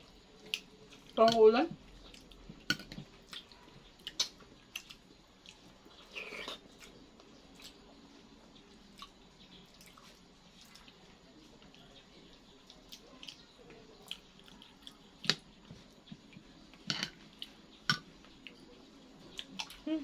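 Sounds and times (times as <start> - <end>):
person chewing: 1.9 - 7.8, 9.0 - 11.0, 14.0 - 18.6.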